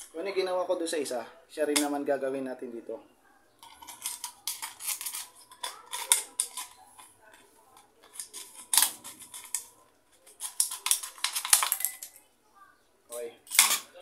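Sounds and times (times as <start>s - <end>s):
metal parts clinking: 3.6s - 12.2s, 13.5s - 13.9s.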